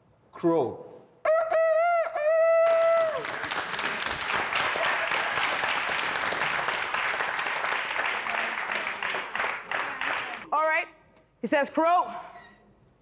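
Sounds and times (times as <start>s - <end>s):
voice imitating a rooster crow: 1.2s - 3.1s
studio audience applauding: 2.6s - 10.5s.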